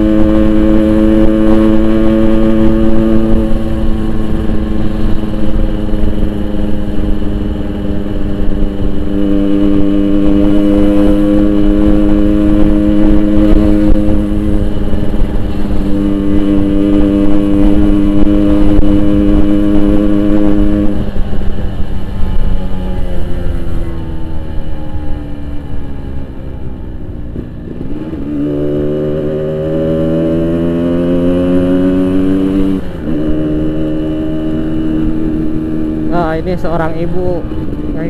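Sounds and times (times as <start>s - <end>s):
motorcycle two-stroke engine cruising: 0.0s - 38.0s.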